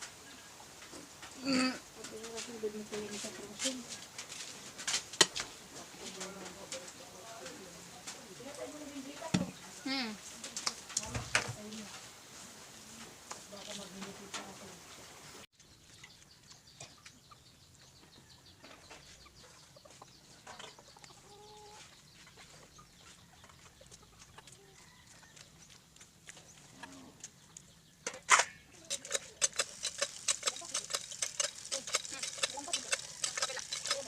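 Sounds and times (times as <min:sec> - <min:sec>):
chickens clucking: 0:02.0 - 0:04.2, 0:05.1 - 0:11.0, 0:15.8 - 0:34.0
crackling ticks: 0:28.8 - 0:34.0.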